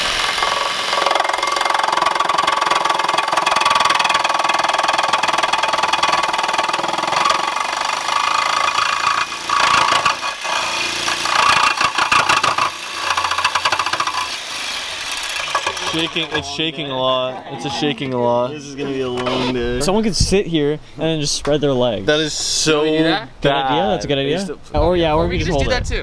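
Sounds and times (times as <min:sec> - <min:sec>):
power tool chattering buzz: 0:00.0 - 0:16.6, 0:19.2 - 0:19.6.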